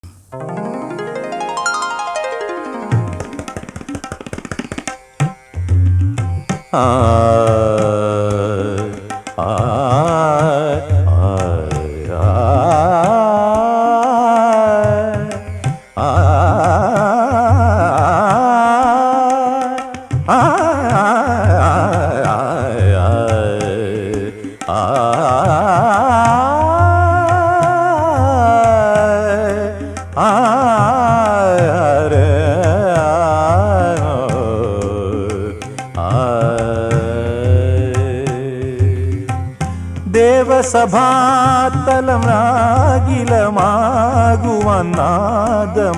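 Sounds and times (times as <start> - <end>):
light percussion: 0.0 - 45.9
wordless classical singing: 0.2 - 3.5.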